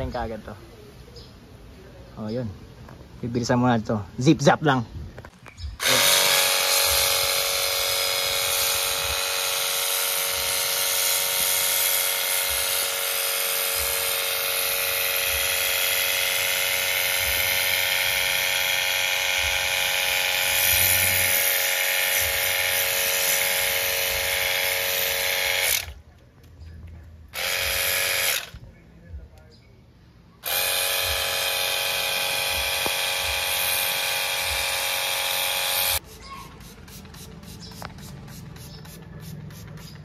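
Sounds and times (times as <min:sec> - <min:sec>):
small electric motor whining: 0:05.8 - 0:26.0, 0:27.4 - 0:28.6, 0:30.4 - 0:36.0.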